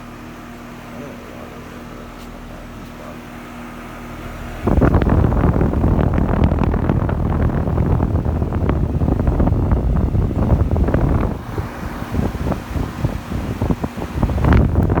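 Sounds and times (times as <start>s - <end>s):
heat pump humming: 0.0s - 15.0s
wind buffeting microphone: 4.5s - 15.0s.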